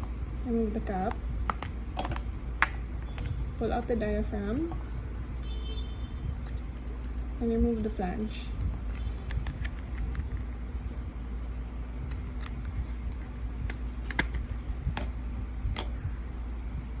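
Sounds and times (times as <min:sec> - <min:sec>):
steady low hum: 0:00.0 - 0:17.0
plastic parts clicking: 0:08.5 - 0:10.5, 0:12.1 - 0:15.0.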